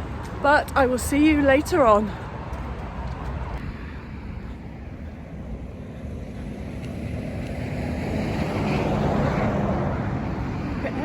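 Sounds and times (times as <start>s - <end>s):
road traffic: 0.0s - 11.0s
wind rumbling on microphone: 2.4s - 11.0s.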